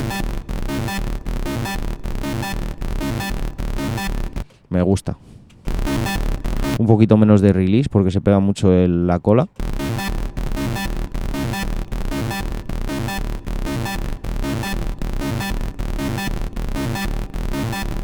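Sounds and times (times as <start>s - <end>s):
distorted techno kicks: 0.0s - 4.4s, 5.7s - 6.8s, 9.6s - 18.0s
sawtooth synth lead riff: 0.0s - 4.4s, 5.7s - 6.8s, 9.6s - 18.0s.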